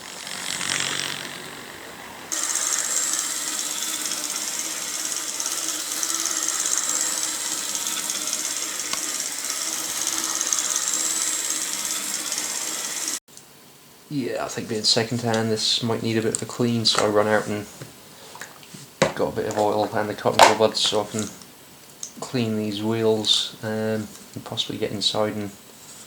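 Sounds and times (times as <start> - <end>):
model train motor whirring: 0.0 - 13.2.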